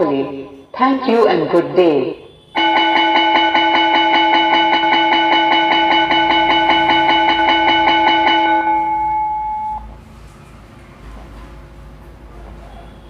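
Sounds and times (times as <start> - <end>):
electric school bell ringing: 2.4 - 10.0.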